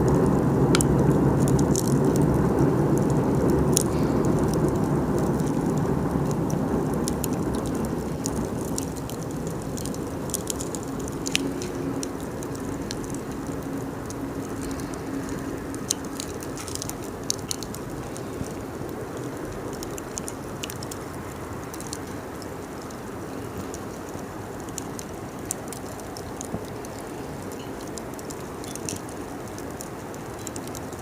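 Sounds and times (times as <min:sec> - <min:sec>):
campfire pops and snaps: 0:00.0 - 0:31.0
low rushing fire noise: 0:00.0 - 0:31.0.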